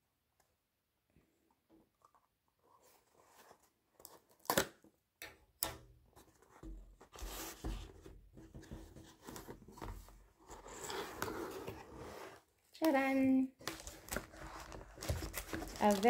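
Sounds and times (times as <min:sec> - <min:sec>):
packaging tearing and rustling: 0:13.6 - 0:16.0.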